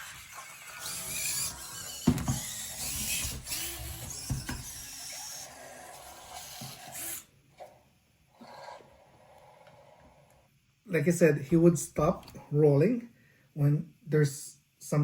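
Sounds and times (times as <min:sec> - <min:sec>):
servo motors whirring: 0:00.8 - 0:07.2.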